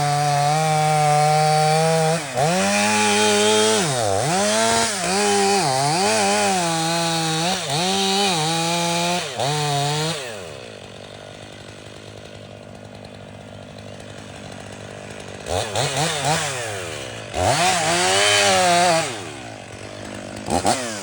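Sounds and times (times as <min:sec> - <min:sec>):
chainsaw cutting wood: 0:00.0 - 0:21.0.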